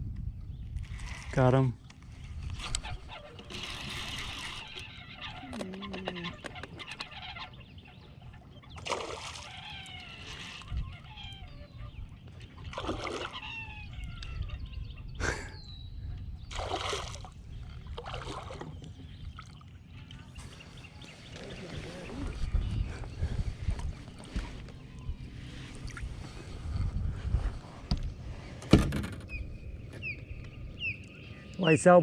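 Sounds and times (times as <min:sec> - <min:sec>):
birds calling: 0:00.4 - 0:32.0
fish thrashing and splashing water: 0:08.8 - 0:10.7, 0:12.6 - 0:13.5, 0:16.5 - 0:18.8.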